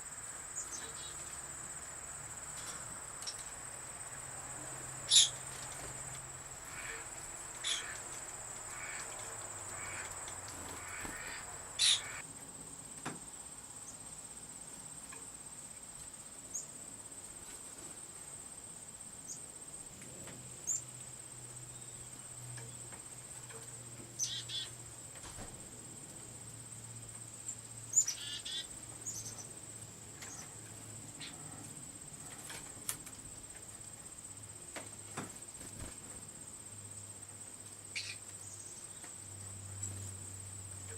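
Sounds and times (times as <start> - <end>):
high-pitched insect chorus: 0.0 - 19.9, 20.6 - 40.9
short bird calls: 6.6 - 8.1, 8.7 - 12.2, 24.2 - 24.8, 28.0 - 29.5.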